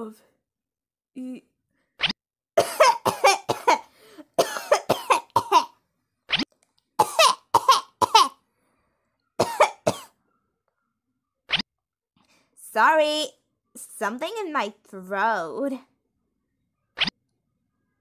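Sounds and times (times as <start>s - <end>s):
person coughing: 2.6s - 5.8s, 7.0s - 8.4s, 9.4s - 10.1s.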